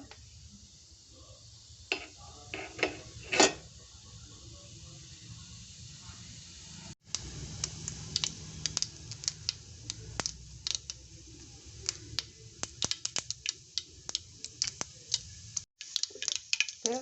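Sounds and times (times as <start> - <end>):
seeds popping in hot oil: 1.8 - 3.2, 7.0 - 17.0.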